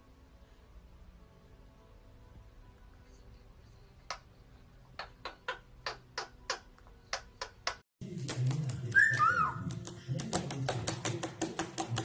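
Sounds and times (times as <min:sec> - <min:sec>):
music: 0:00.0 - 0:12.0.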